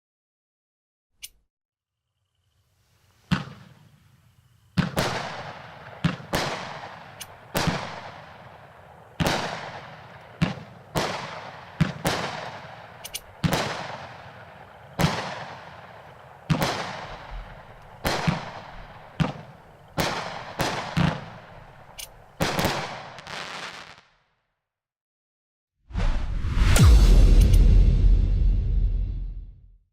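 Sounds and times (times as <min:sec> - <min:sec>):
fireworks bangs: 0:03.2 - 0:04.1, 0:04.7 - 0:24.1.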